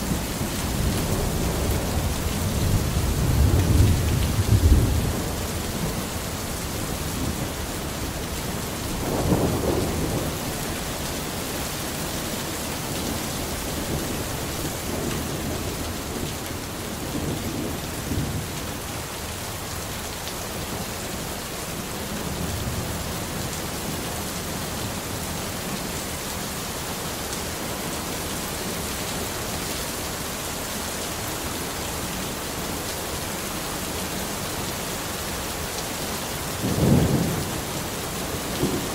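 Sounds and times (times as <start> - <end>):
steady rain hiss: 0.0 - 38.9
rolling thunder: 8.5 - 11.4, 36.6 - 37.8.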